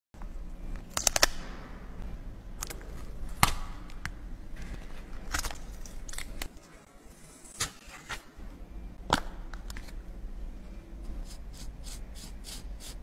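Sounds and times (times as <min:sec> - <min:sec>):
low steady hum: 0:00.2 - 0:13.0.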